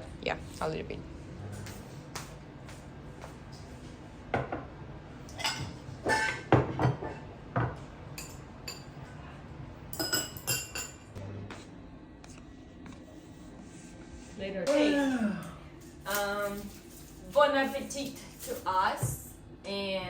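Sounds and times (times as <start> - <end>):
dishes clinking: 5.3 - 9.0, 10.0 - 11.1.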